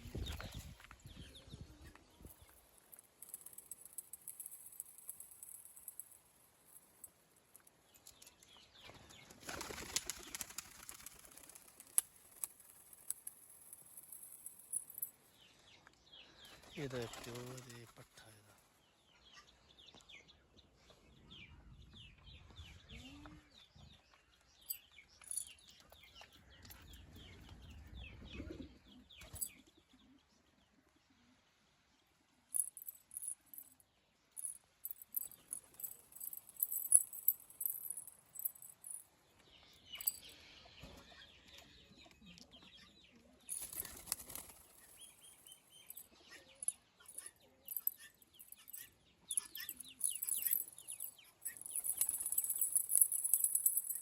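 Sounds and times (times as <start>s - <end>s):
pigeon wings flapping: 9.3s - 12.6s, 17.1s - 17.7s, 43.6s - 44.9s.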